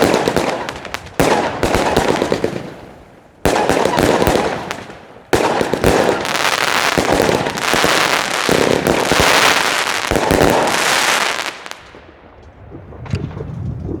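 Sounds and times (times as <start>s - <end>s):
fireworks cake rapid shots: 0.0s - 12.0s.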